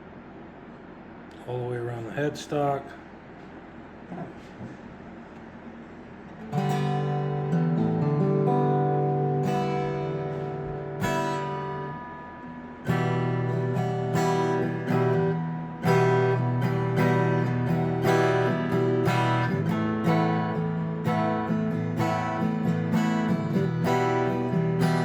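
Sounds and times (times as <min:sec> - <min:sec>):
acoustic guitar strumming chords: 0:06.4 - 0:25.0.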